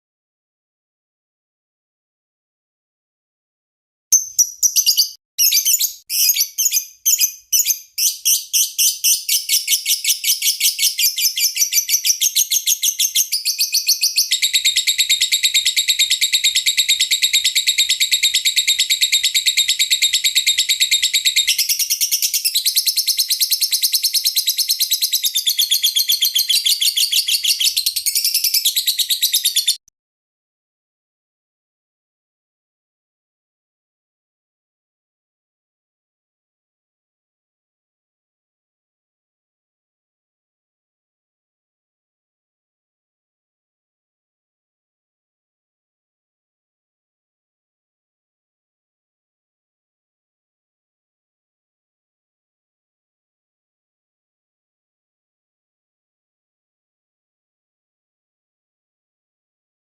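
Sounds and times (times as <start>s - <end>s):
lovebird chirping trill: 4.1s - 29.8s.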